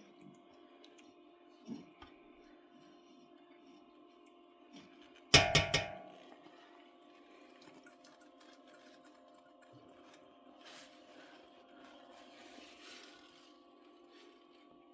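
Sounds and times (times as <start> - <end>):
sharp knocks with ringing tail: 5.4 - 6.1
steady low hum: 5.4 - 7.7.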